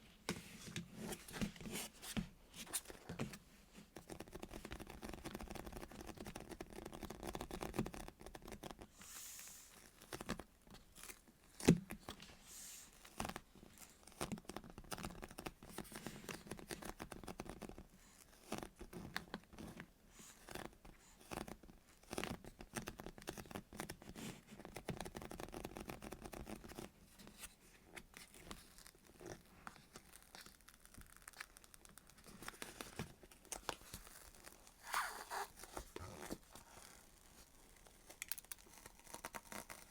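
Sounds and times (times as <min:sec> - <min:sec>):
squishy toys squeezed and rustling: 0:28.2 - 0:39.9.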